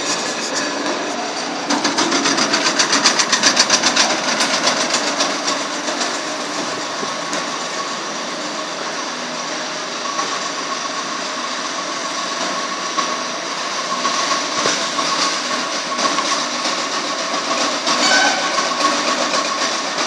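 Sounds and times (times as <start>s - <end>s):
rapid rattle: 0.0s - 8.4s
wood chipper running: 0.0s - 20.0s.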